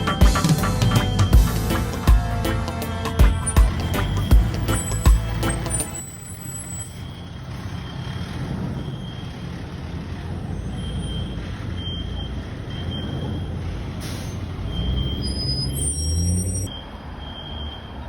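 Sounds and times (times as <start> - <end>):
truck engine idling: 0.0 - 18.0.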